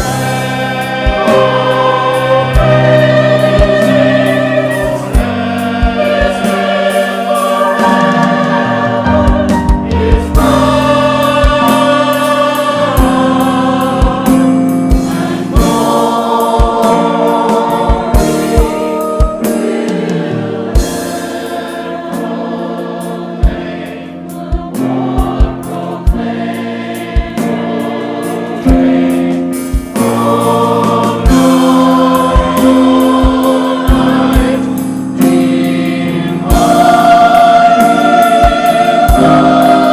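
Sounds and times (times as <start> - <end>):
sustained low instrumental notes: 0.0 - 22.5
church choir singing: 0.0 - 39.9.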